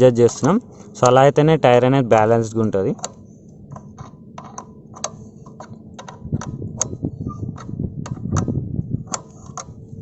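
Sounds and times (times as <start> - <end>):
spanner clicking on metal bolt: 2.2 - 9.8.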